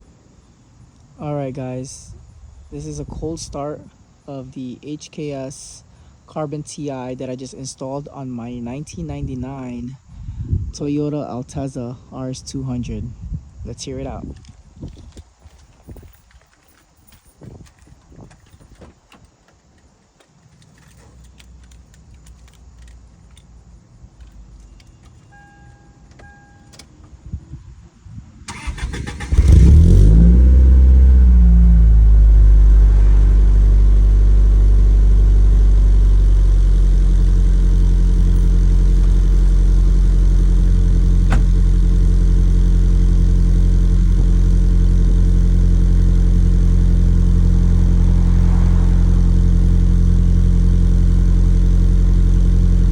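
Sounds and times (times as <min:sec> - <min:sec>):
short beeps: 0:25.2 - 0:26.8
engine starter cranking: 0:28.5 - 0:30.3
car engine revving and idling: 0:28.5 - 0:52.9.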